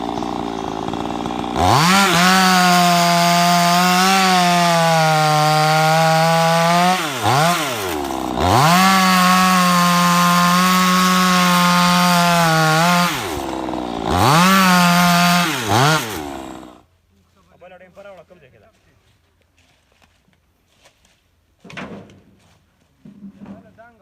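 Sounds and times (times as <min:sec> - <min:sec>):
chainsaw cutting wood: 0:00.0 - 0:16.9.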